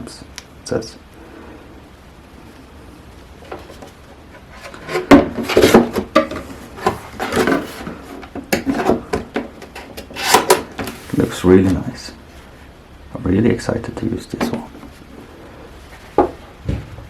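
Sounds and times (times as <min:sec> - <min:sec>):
hands handling hard plastic: 0:03.4 - 0:11.9.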